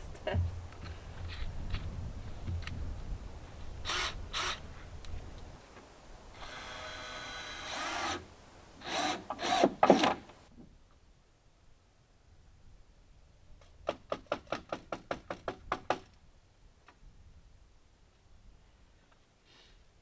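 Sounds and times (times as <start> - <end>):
power drill running: 3.8 - 4.6, 6.4 - 9.8
knocks of wood and tools: 9.3 - 10.3.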